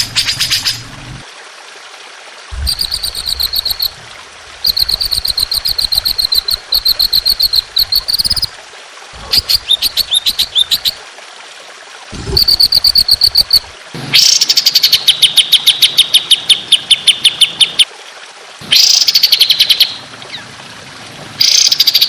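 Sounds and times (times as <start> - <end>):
songbird singing rapid trills: 4.7 - 8.5.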